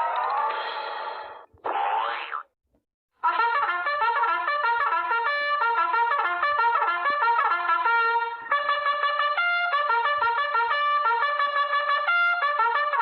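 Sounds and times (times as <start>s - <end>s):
cartoon ringtone brass melody: 3.2s - 13.0s.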